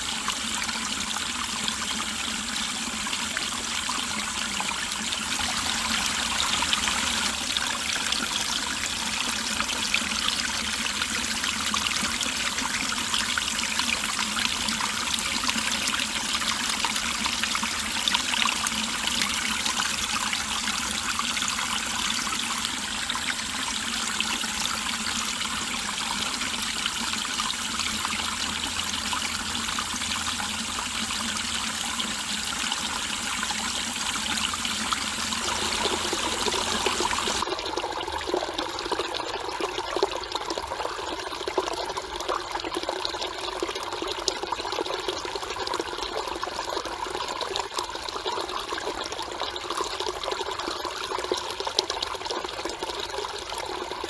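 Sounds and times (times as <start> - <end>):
stream babbling over rocks: 5.3 - 10.9, 21.4 - 37.5.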